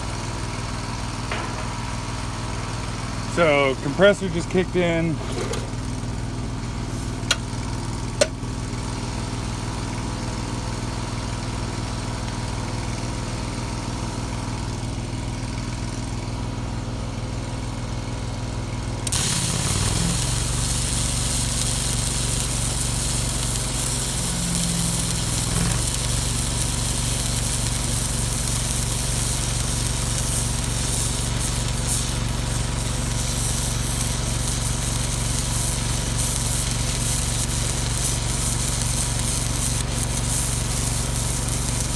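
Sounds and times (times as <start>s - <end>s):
air compressor running: 4.8s - 8.4s, 19.0s - 41.9s
loud steady hiss: 19.1s - 41.9s.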